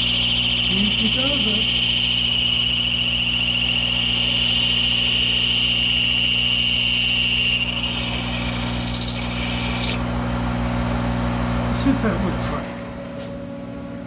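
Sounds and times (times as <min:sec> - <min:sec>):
high-pitched whine: 0:00.0 - 0:10.0
lathe humming: 0:00.0 - 0:10.1.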